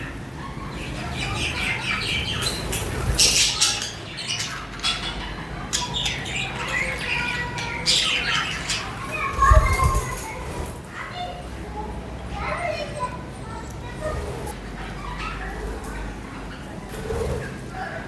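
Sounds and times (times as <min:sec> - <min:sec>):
budgerigars chirping and squawking: 0:00.0 - 0:10.7.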